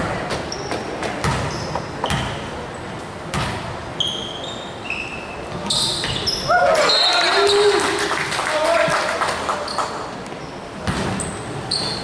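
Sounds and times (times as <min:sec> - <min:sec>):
sneaker squeaks on hardwood: 0:00.4 - 0:02.6, 0:04.0 - 0:07.1, 0:09.7 - 0:12.0
basketball bouncing on gym floor: 0:00.6 - 0:02.4, 0:03.3 - 0:03.8, 0:10.8 - 0:11.3.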